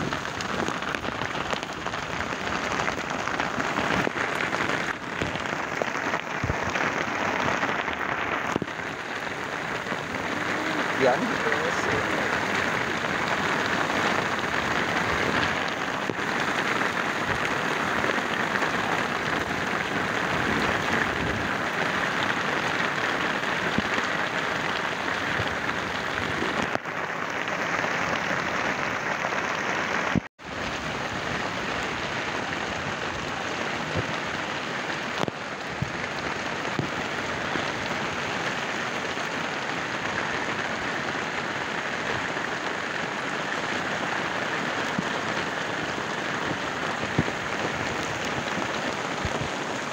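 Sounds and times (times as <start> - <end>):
heavy rain pouring: 0.0 - 49.9.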